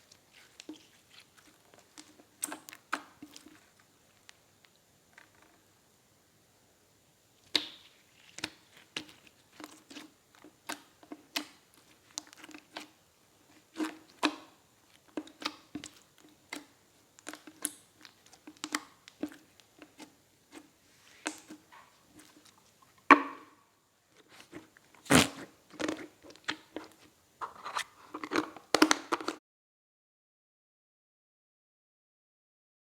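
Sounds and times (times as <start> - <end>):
slime popping and clicking: 7.5 - 9.1.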